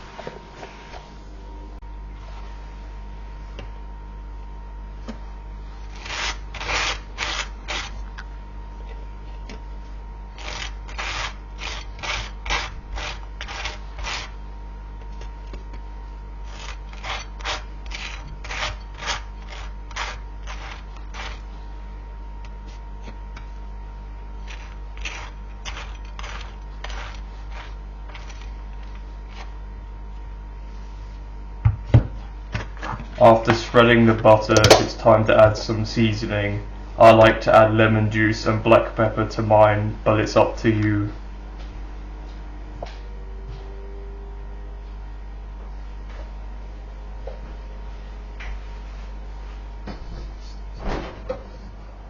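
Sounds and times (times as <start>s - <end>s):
knife scraping butter on toast: 16.5s - 21.4s, 24.4s - 29.5s.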